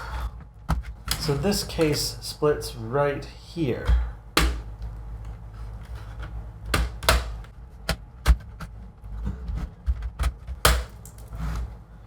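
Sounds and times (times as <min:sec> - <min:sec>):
plastic clips snapping: 0:10.0 - 0:11.3
plastic bits falling: 0:10.6 - 0:11.4.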